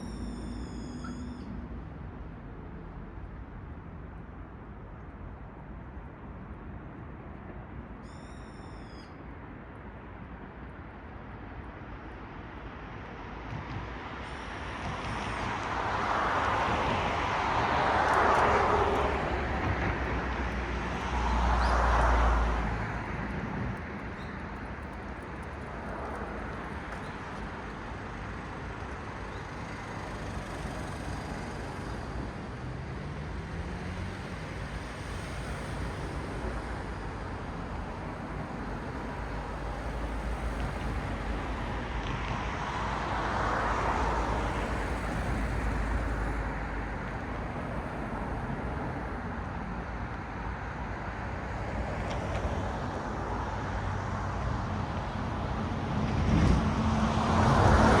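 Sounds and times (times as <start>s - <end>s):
distant traffic hum: 0.0s - 58.0s
cars passing: 14.0s - 58.0s.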